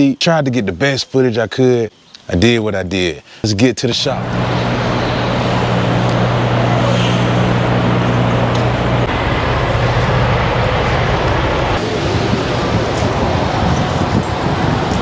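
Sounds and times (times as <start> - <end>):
road noise: 3.9 - 15.0
truck engine droning: 4.0 - 15.0.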